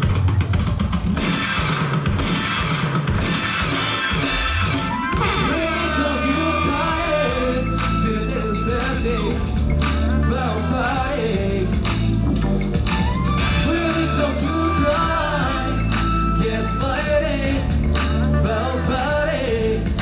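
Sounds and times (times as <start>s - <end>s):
pop dance track with bass beat: 0.0s - 20.0s
men singing: 5.2s - 20.0s.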